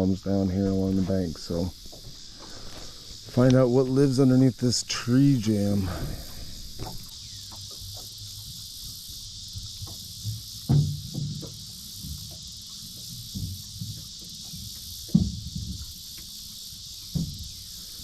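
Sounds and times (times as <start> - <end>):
insects droning: 0.0 - 18.0
tree knocking against boat: 9.6 - 16.3, 17.1 - 17.7.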